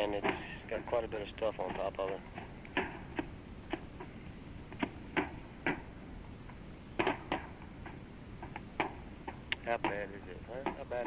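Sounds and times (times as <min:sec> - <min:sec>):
tape hiss: 0:00.0 - 0:11.0
ammunition exploding pops: 0:07.0 - 0:10.0.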